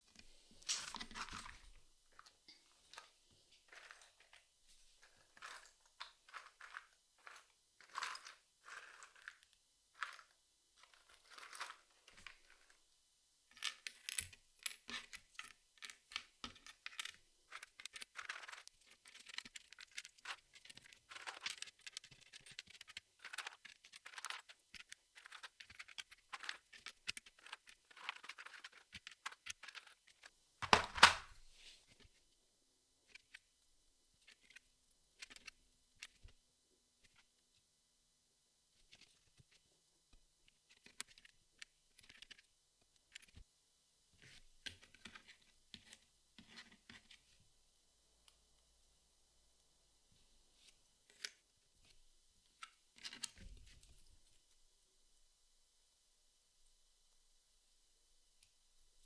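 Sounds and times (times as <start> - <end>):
puzzle pieces clicking and scraping: 5.4 - 9.4, 25.2 - 31.3.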